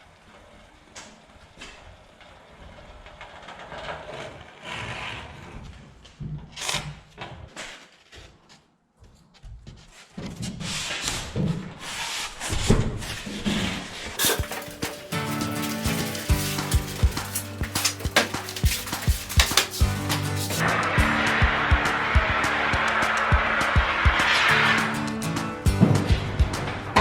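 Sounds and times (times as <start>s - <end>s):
foam board rubbing and scraping: 3.6s - 6.0s, 10.2s - 20.9s
music: 14.2s - 27.0s.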